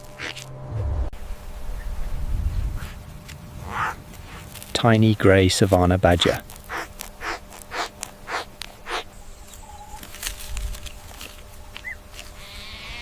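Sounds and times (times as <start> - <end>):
badger snuffling: 3.6 - 4.6, 6.2 - 9.1.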